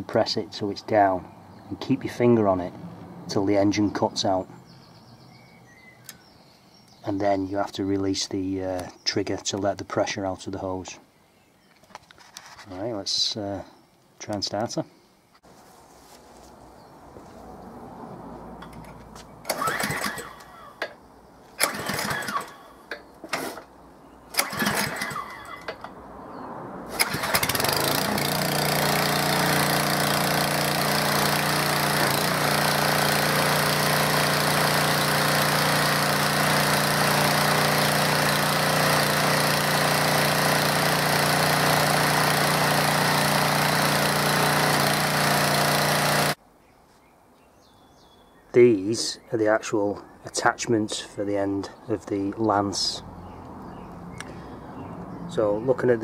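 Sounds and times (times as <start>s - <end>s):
recoil starter pulls: 18.6s - 23.7s, 24.3s - 25.9s, 26.9s - 46.4s
pressure washer engine running: 19.4s - 20.7s, 21.6s - 22.7s, 24.3s - 25.6s, 26.9s - 46.4s.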